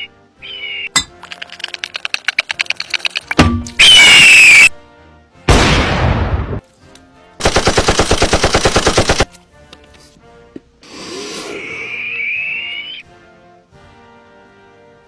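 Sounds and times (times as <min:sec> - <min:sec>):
rapid gunfire: 0:07.4 - 0:09.3.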